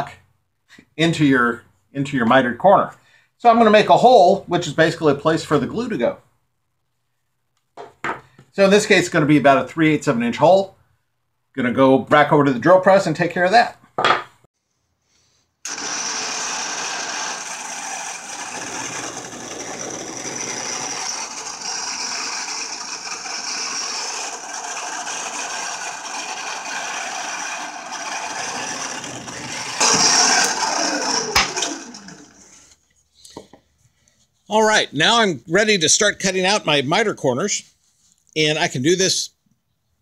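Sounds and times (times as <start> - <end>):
motor winding down: 15.7 - 32.6
drill press boring wood: 15.7 - 32.8.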